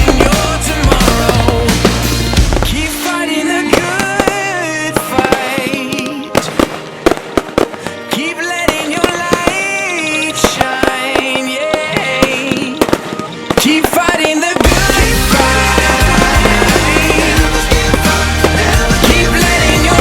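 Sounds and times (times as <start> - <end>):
fireworks exploding: 0.0 - 20.0
music with melody: 0.0 - 20.0.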